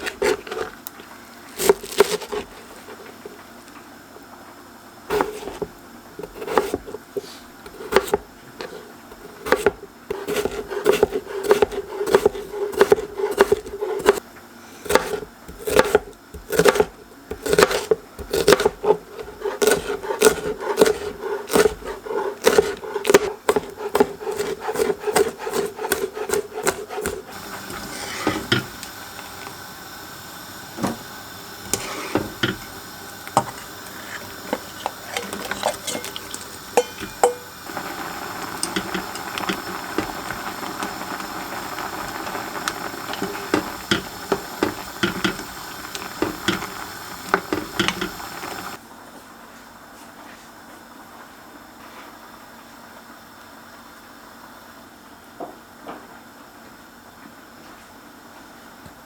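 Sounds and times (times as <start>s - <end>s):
knife chopping on wooden board: 1.6s - 2.5s, 5.1s - 8.8s, 9.4s - 14.2s, 14.8s - 28.7s
kitchen knocks and clinks: 34.6s - 37.6s.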